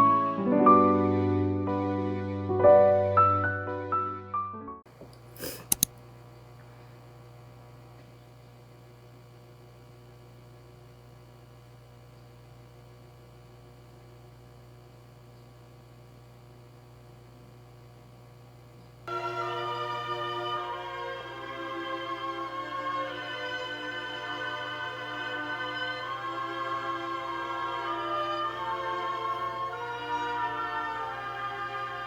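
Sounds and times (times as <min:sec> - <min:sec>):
string music: 0:00.0 - 0:04.3, 0:19.1 - 0:32.0
piano music: 0:00.0 - 0:04.8, 0:19.1 - 0:32.0
low electrical hum: 0:04.9 - 0:32.0
sharp clicks: 0:05.1 - 0:06.0.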